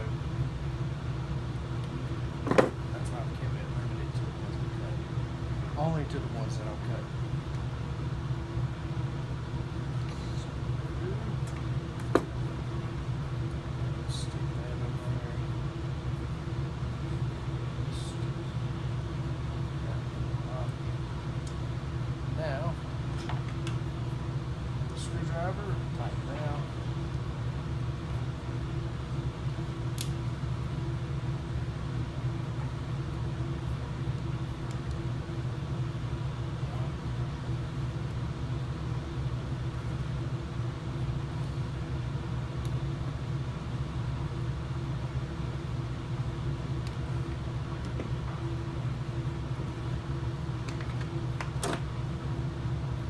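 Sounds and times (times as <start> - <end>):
low mechanical hum: 0.0 - 53.0
light click: 30.0 - 30.2.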